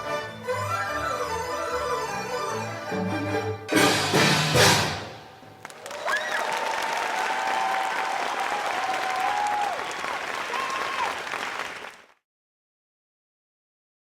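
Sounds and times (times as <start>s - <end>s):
audience clapping: 5.6s - 12.2s
crowd cheering: 5.6s - 12.2s.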